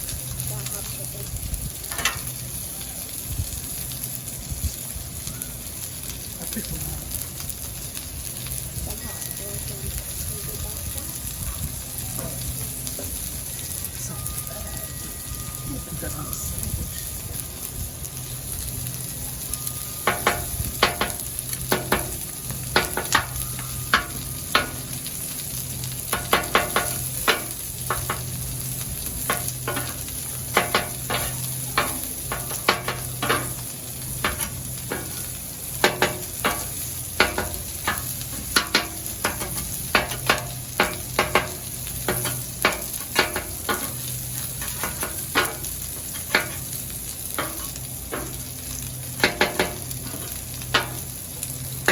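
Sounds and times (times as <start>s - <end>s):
food sizzling on a griddle: 0.0s - 51.9s
metal spatula scraping steel: 29.2s - 46.7s.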